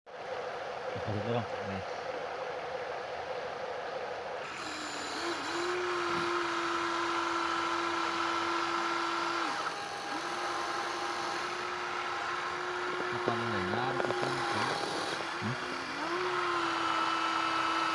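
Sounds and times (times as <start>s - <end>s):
small electric motor whining: 4.4s - 17.9s.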